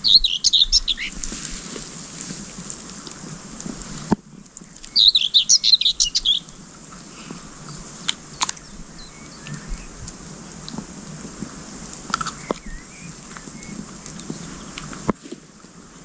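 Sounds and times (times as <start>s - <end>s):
small songbird chirping: 0.0s - 1.8s, 4.3s - 10.8s, 12.1s - 15.1s.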